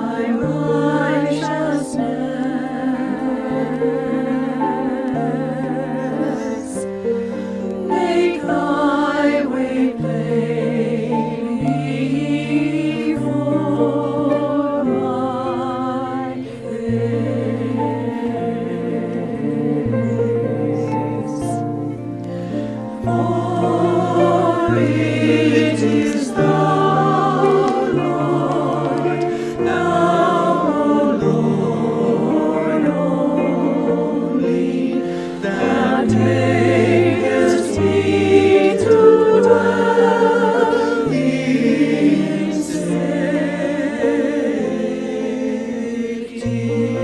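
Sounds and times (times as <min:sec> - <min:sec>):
choir singing a hymn: 0:00.0 - 0:47.0.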